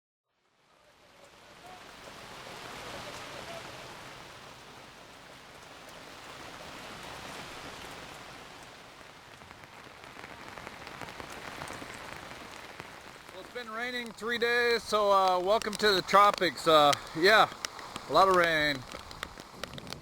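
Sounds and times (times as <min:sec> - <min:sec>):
steady rain falling: 0:00.3 - 0:20.0
raindrops ticking on a surface: 0:00.5 - 0:20.0.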